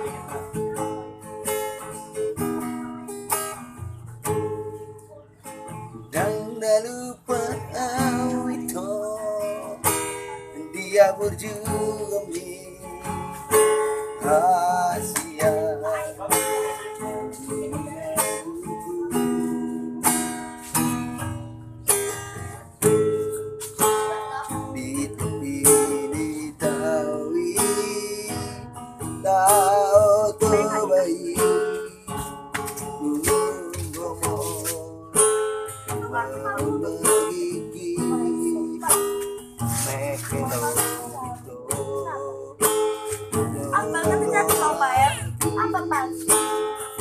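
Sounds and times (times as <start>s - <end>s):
strummed guitar chords: 0.0s - 47.0s
people singing: 6.1s - 13.3s, 14.2s - 19.6s, 29.2s - 32.0s, 36.0s - 42.6s, 43.4s - 47.0s.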